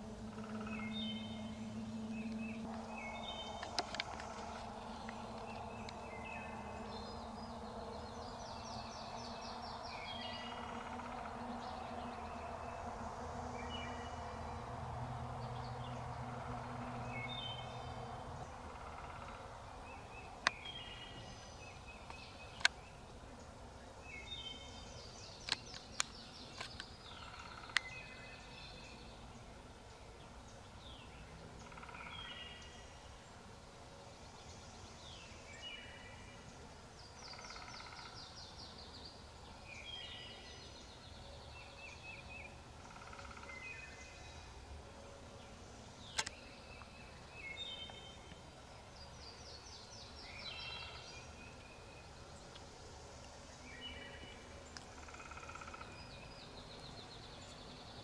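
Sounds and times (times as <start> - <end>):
songbirds singing: 0.0 - 58.0
sharp clicks: 46.1 - 46.9.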